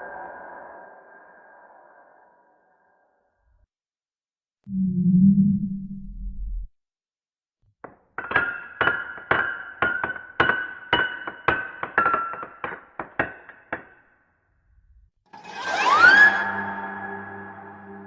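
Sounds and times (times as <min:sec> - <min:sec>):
low rumble: 0:04.7 - 0:06.7.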